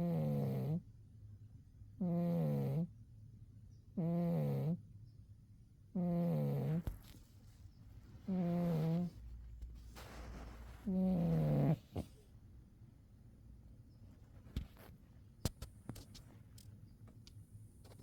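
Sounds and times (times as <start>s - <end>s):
cat snoring: 0.0s - 0.8s, 2.0s - 2.9s, 4.0s - 4.8s, 6.0s - 6.9s, 8.3s - 9.2s, 10.0s - 12.2s.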